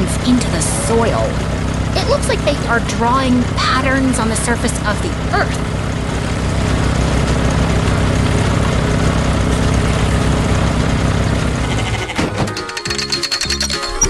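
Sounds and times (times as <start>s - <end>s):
tractor engine running: 0.0s - 14.0s
music: 12.1s - 14.0s.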